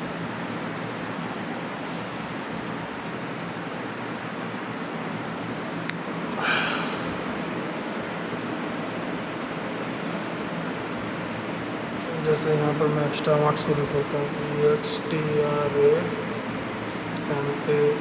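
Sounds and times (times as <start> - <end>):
steady background hiss: 0.0 - 18.0.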